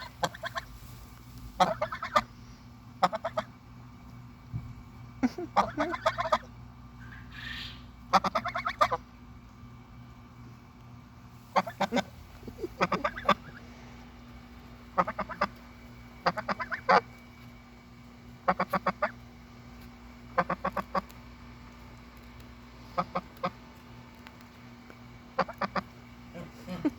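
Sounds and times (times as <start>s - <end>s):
goose honking: 0.0s - 0.7s, 1.6s - 2.3s, 3.0s - 3.5s, 5.6s - 6.5s, 7.2s - 9.0s, 11.5s - 13.7s, 14.9s - 17.1s, 18.4s - 19.2s, 20.3s - 21.2s, 22.8s - 23.6s, 25.3s - 26.8s
steady low hum: 0.0s - 26.9s.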